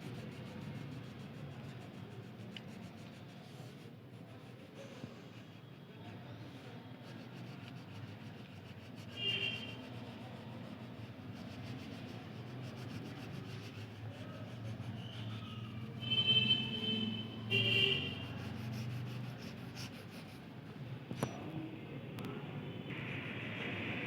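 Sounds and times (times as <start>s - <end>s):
crayon rubbing on paper: 0.0s - 16.2s, 17.5s - 20.5s.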